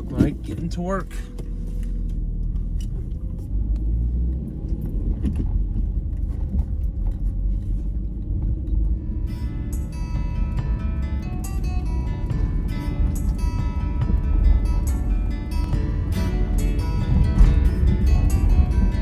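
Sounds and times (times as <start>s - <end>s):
car engine and road noise: 0.0s - 19.0s
music: 8.2s - 19.0s.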